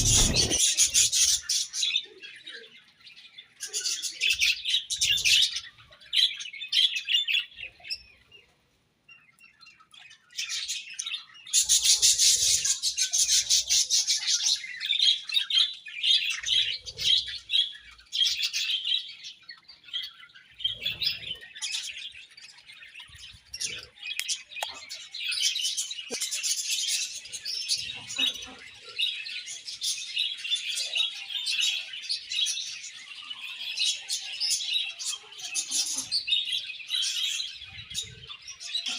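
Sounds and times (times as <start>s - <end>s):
budgerigars chirping: 0.0s - 1.5s.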